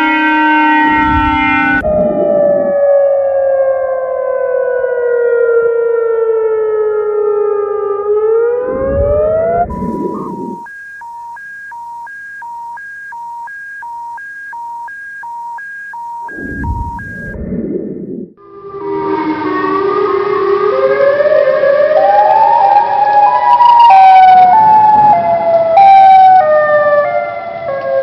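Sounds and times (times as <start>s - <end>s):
emergency siren wailing: 0.0s - 28.0s
low rumbles: 0.8s - 3.3s, 8.5s - 10.7s, 16.2s - 18.4s
high-low two-tone alert beeping: 9.7s - 17.4s.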